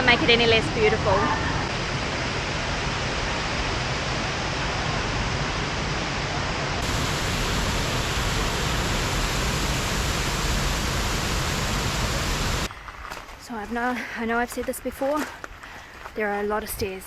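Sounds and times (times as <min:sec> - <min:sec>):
waterfall roar: 0:01.4 - 0:12.7.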